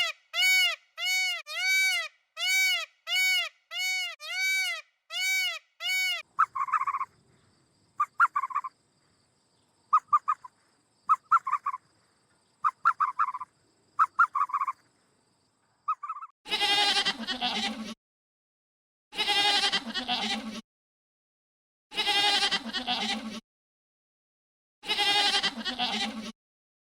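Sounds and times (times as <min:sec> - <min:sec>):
fowl calling in quick notes: 0:00.0 - 0:07.1, 0:15.9 - 0:16.3
sheep or goat bleating: 0:16.5 - 0:18.0, 0:19.2 - 0:20.6, 0:21.9 - 0:23.4, 0:24.8 - 0:26.4.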